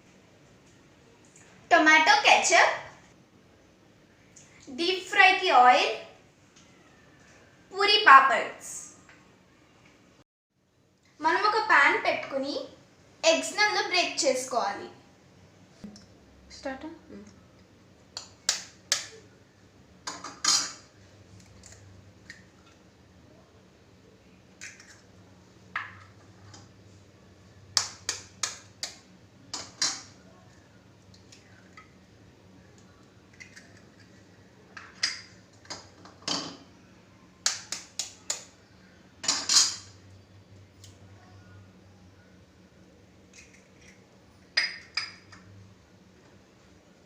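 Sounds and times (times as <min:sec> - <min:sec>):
faint steady hum: 0:00.0 - 0:47.0
eggs cracked against a pan: 0:18.2 - 0:19.2, 0:27.8 - 0:30.1, 0:37.4 - 0:38.5
utensils clinking on cookware: 0:20.1 - 0:20.9, 0:39.2 - 0:39.9, 0:44.5 - 0:45.4.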